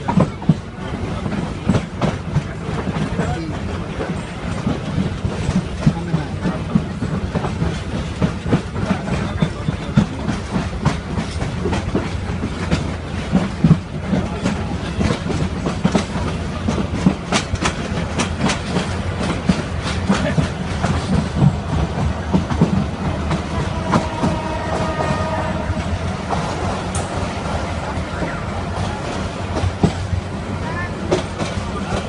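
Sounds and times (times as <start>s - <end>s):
wheels clicking and knocking: 0.0s - 25.2s
train rumbling on rails: 0.0s - 32.0s.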